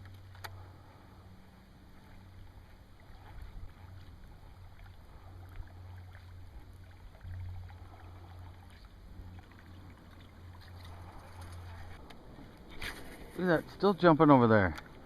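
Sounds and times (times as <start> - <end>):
low engine hum: 0.0 - 15.0
water lapping: 0.0 - 15.0.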